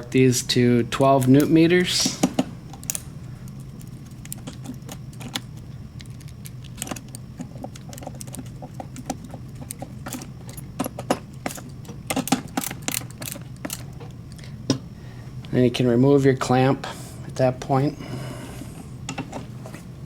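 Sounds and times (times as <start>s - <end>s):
ratchet wrench clicking: 12.3s - 13.9s.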